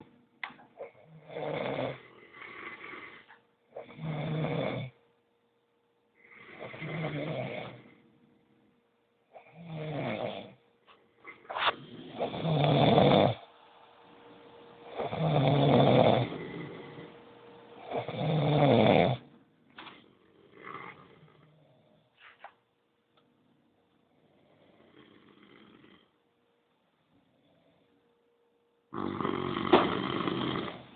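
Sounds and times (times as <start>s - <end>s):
person snoring: 0.8s - 5.0s, 6.2s - 8.0s, 9.3s - 10.6s, 11.3s - 13.5s, 14.8s - 17.2s, 17.8s - 19.3s, 20.2s - 22.0s, 24.2s - 26.2s, 28.9s - 30.9s.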